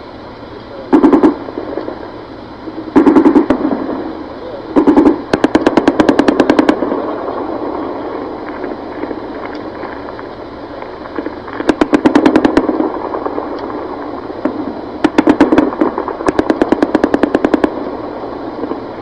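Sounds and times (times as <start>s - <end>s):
background rumble: 0.0s - 19.0s
automatic gunfire bursts: 0.9s - 2.0s, 3.0s - 4.1s, 4.8s - 9.5s, 11.1s - 18.0s.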